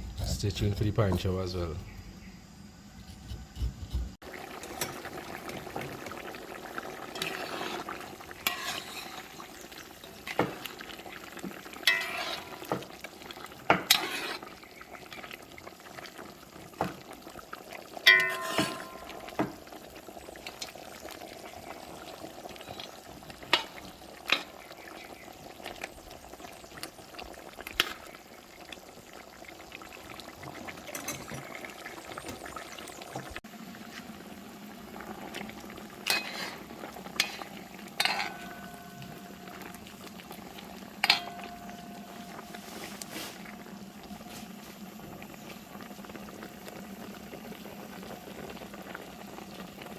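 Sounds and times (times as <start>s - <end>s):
pots bubbling on stove: 0.0s - 49.9s
kitchen utensils knocking and clinking: 11.9s - 12.9s, 18.1s - 19.6s, 30.9s - 31.5s, 38.0s - 39.3s.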